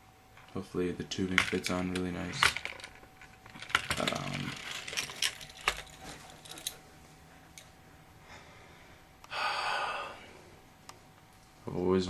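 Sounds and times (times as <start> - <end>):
breathy rush of noise: 8.1 - 10.7.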